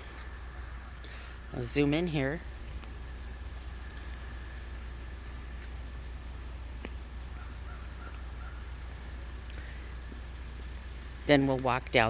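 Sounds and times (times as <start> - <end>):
steady low rumble: 0.0 - 12.0
faint bird chirps: 3.1 - 4.8.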